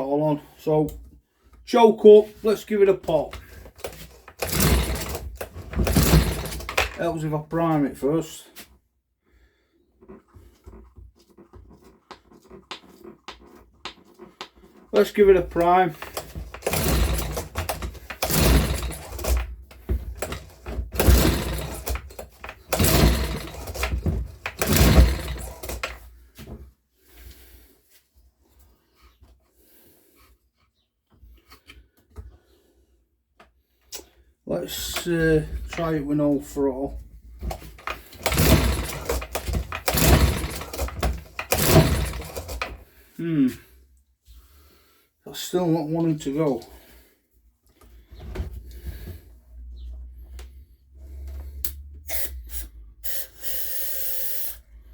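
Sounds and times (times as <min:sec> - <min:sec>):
recoil starter pulls: 0:01.7 - 0:08.4, 0:12.2 - 0:26.2, 0:34.7 - 0:43.0
leaf blower engine cranking: 0:02.0 - 0:08.2, 0:14.9 - 0:26.0, 0:34.7 - 0:42.9.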